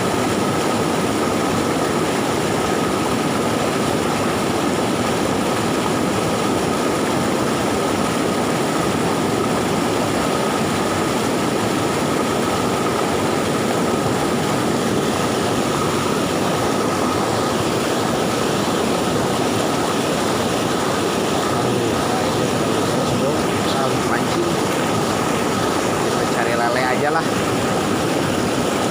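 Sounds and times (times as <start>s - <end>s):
river rushing: 0.0s - 28.9s.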